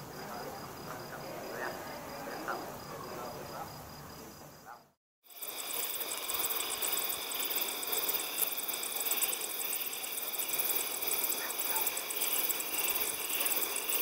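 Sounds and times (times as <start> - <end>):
crickets chirping: 0.0 - 14.0
scattered night calls: 0.0 - 14.0
steady high whine: 5.3 - 14.0.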